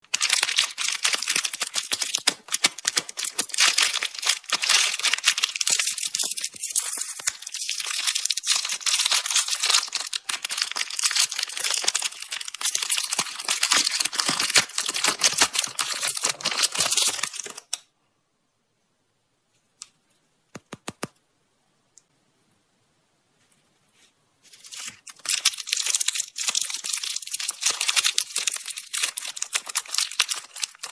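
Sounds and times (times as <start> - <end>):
plastic packaging crinkling: 0.0 - 17.8, 24.5 - 30.9.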